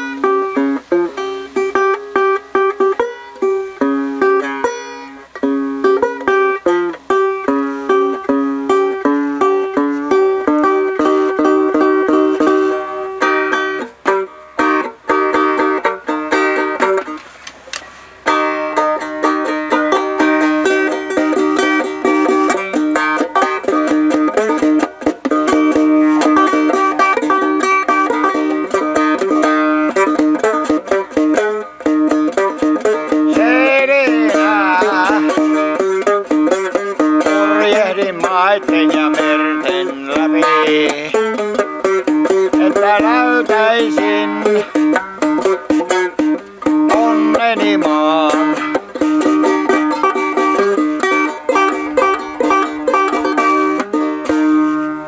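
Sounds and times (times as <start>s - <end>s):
instrumental music with plucked strings: 0.0s - 55.0s
wavering bending notes: 17.9s - 55.0s.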